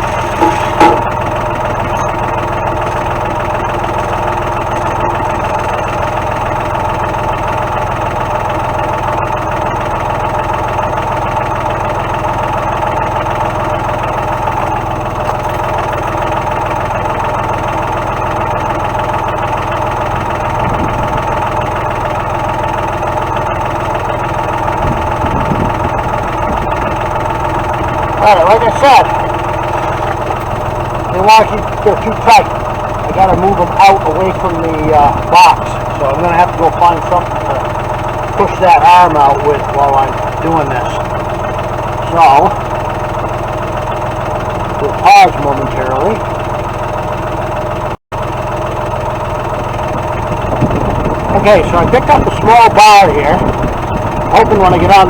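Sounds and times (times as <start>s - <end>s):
tractor engine idling: 0.0s - 55.0s.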